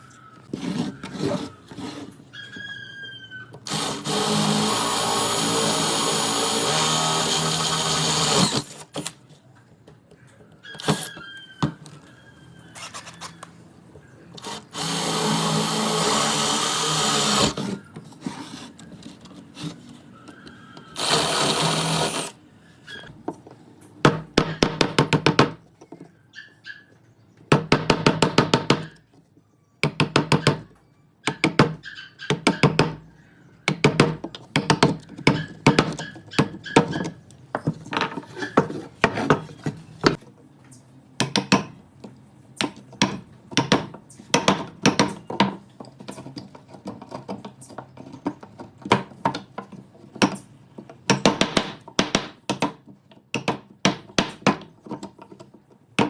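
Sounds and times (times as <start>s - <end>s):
knocking and tapping on wood: 23.3s - 26.1s, 29.8s - 33.0s, 33.7s - 40.2s, 41.2s - 41.8s, 42.6s - 56.0s.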